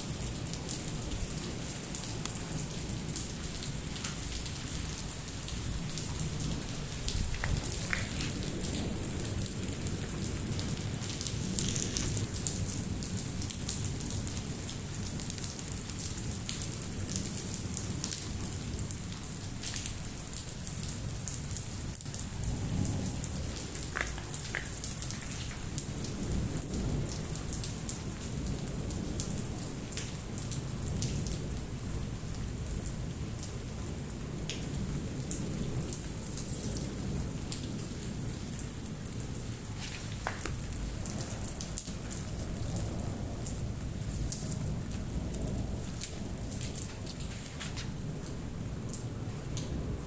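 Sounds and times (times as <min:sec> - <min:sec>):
rain and hail hissing: 0:00.0 - 0:50.0
hailstones pelting hard surfaces: 0:05.4 - 0:14.2, 0:22.5 - 0:27.1, 0:39.6 - 0:42.8.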